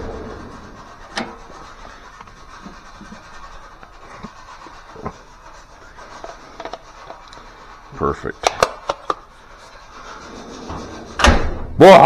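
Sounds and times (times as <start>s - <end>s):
tools clicking and knocking: 6.2s - 7.4s, 8.4s - 9.3s.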